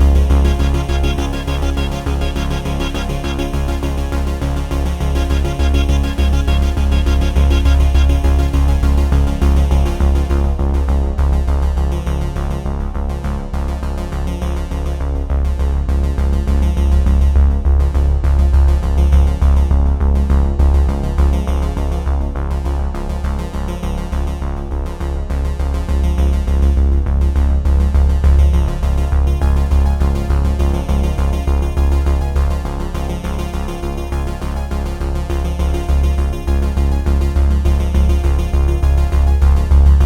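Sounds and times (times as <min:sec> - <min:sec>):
electronic synthesizer music: 0:00.0 - 0:10.3, 0:37.7 - 0:40.0
pulsing bass beat: 0:00.0 - 0:24.0, 0:24.6 - 0:40.0.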